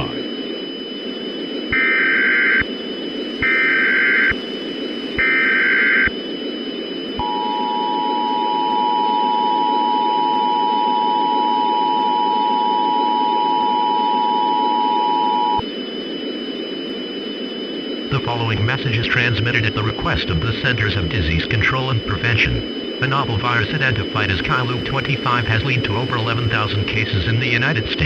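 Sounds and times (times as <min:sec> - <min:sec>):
static hiss: 0:16.5 - 0:28.0
digital data tone bursts: 0:18.0 - 0:28.0.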